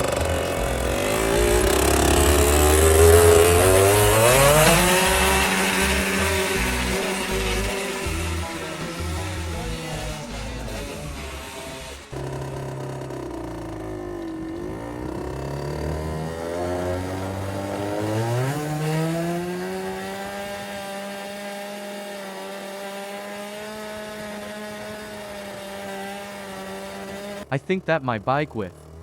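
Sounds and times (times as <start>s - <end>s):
two-stroke engine revving: 0.0s - 29.0s.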